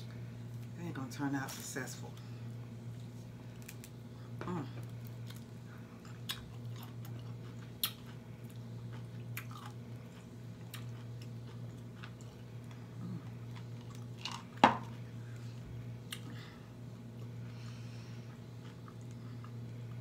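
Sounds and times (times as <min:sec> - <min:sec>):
person chewing: 0:04.8 - 0:16.4, 0:18.2 - 0:20.0.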